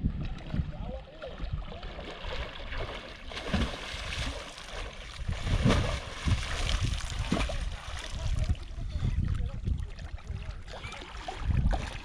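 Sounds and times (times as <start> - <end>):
flowing water: 0.0 - 12.0
wind buffeting microphone: 0.0 - 12.0.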